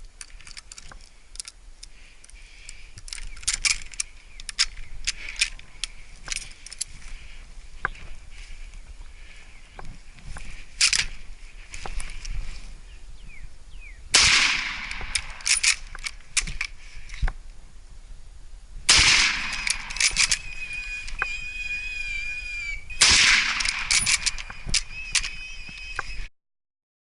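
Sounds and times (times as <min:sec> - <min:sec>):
loud rifle shots: 0:14.1 - 0:15.4, 0:18.9 - 0:20.4, 0:23.0 - 0:24.6.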